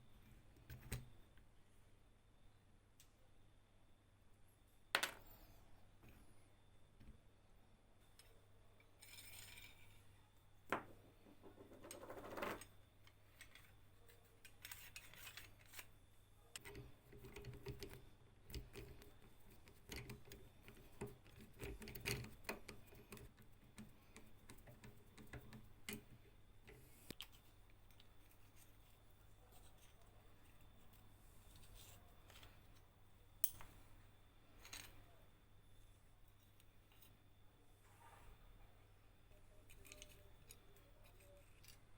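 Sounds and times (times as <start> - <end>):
metal parts clicking and tapping: 14.4 - 15.9, 16.6 - 28.1, 33.4 - 33.8, 39.6 - 41.9.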